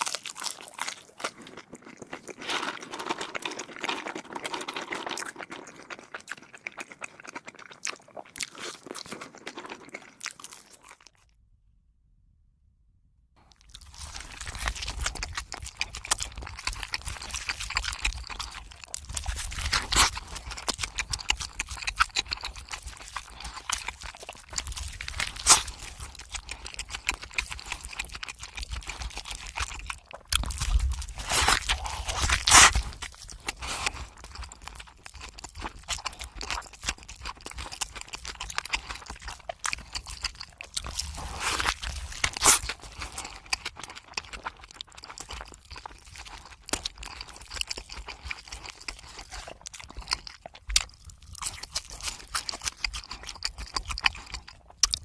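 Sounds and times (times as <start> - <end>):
wet chewing and crunching: 0.0 - 11.4, 13.4 - 55.0
crisp bites: 13.5 - 55.0.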